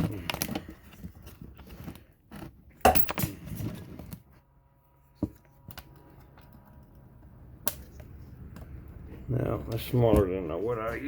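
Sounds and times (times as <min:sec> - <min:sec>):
small tools clicking and knocking: 0:02.9 - 0:03.4.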